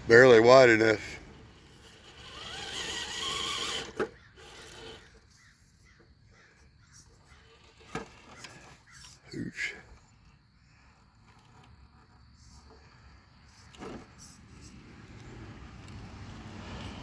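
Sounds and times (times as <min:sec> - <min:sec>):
electric motor whining: 0:01.3 - 0:05.4.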